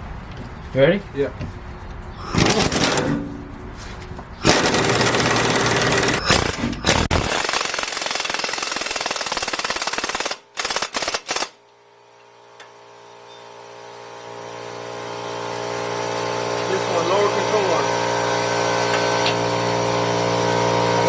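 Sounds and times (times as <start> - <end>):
steady motor hum: 1.9 - 7.4, 11.6 - 21.0
impact wrench hammering: 2.2 - 3.3, 4.4 - 11.5.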